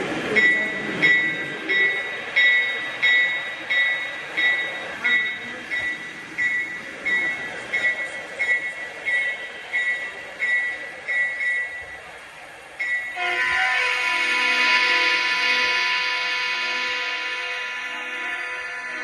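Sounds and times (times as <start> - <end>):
freight train passing: 0.0 - 19.0
high ringing tone: 0.4 - 12.0.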